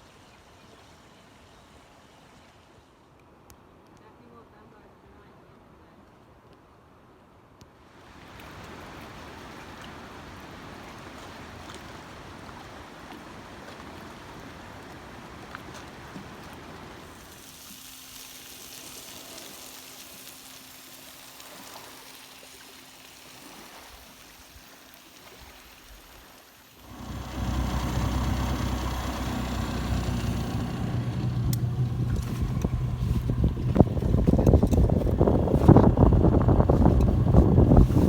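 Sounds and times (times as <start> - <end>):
faint steady hiss: 16.8 - 38.0
boat engine droning: 26.7 - 38.0.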